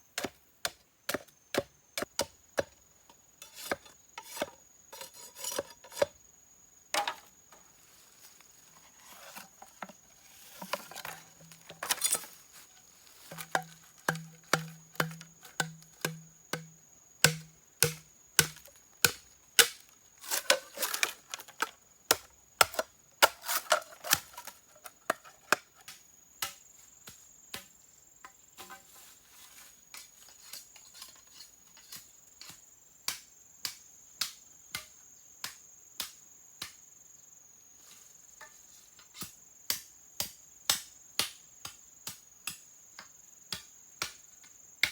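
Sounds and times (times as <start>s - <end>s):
insects trilling: 0.0s - 44.9s
sharp knocks on wood: 13.3s - 19.7s.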